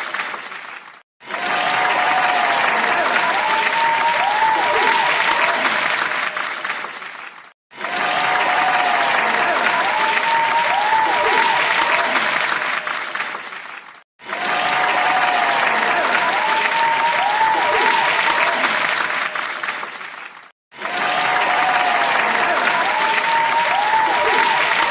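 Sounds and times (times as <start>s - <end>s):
crowd applause: 0.0s - 24.9s.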